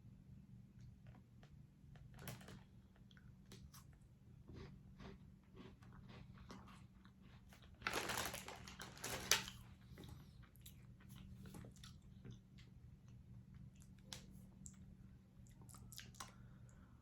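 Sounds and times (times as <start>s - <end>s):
crunchy snack being chewed: 2.2s - 12.4s, 15.4s - 16.6s.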